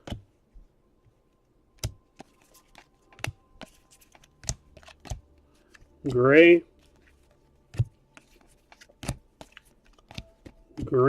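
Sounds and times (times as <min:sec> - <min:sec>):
cards flicking and sliding: 0:01.8 - 0:05.9, 0:06.8 - 0:11.0
trading cards snapping: 0:01.8 - 0:06.2, 0:07.7 - 0:11.0.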